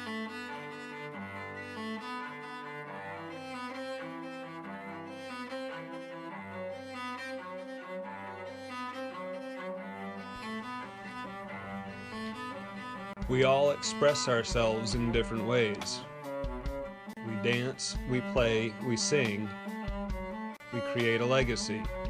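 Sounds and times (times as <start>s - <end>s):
bowed string music: 0.0s - 22.0s
low bass line: 13.2s - 22.0s.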